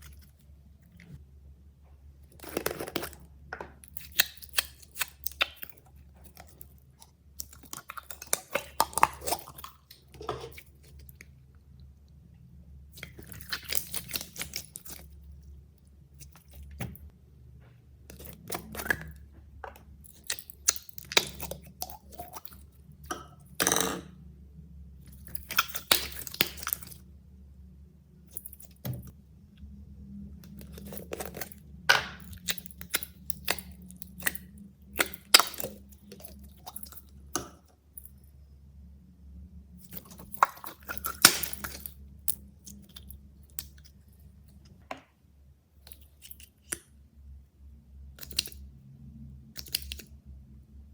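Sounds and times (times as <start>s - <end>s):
faint low hum: 0.0s - 50.9s.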